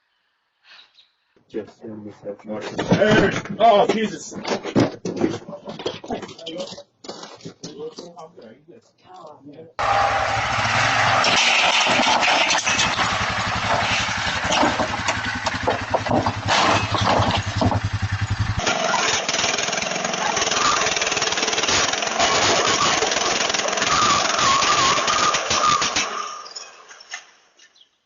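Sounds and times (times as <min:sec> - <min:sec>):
lawn mower engine running: 0:09.8 - 0:26.2.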